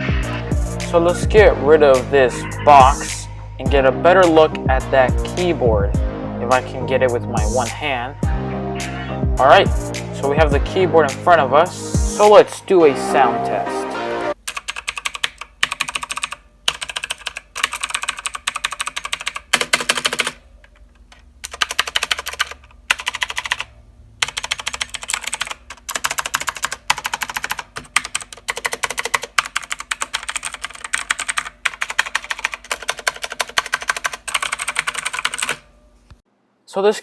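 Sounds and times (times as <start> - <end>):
fast mechanical keyboard typing: 14.5 - 20.4, 21.1 - 35.7.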